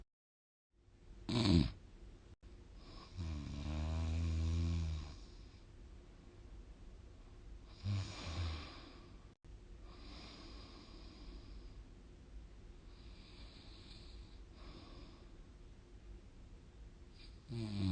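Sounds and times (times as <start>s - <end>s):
person snoring: 1.3s - 1.8s, 2.8s - 5.5s, 7.7s - 9.2s, 17.2s - 17.9s.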